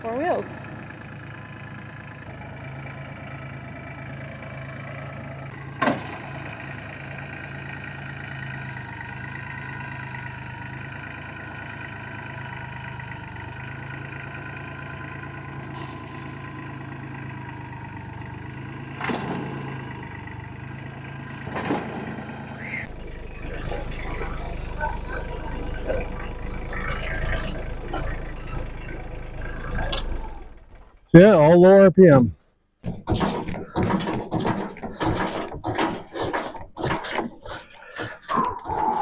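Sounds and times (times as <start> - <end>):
engine running at low revs: 0.0 - 31.1.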